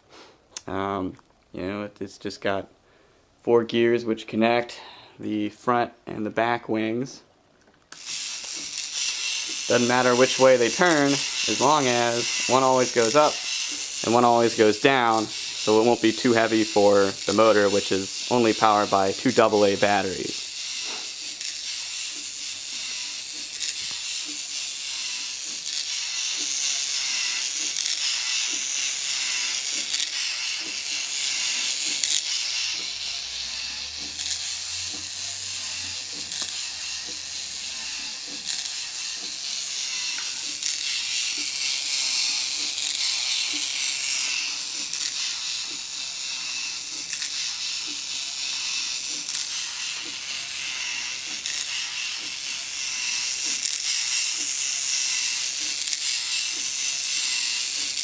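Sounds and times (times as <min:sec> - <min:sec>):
small electric motor whirring: 0:07.9 - 0:58.0.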